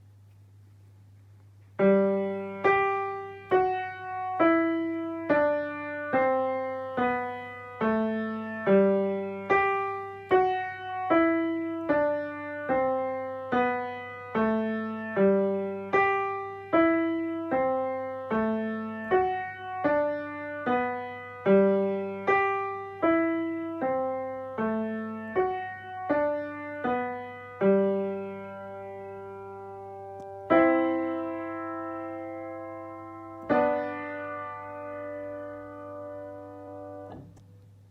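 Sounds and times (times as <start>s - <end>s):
piano playing slow tune: 1.8s - 37.4s.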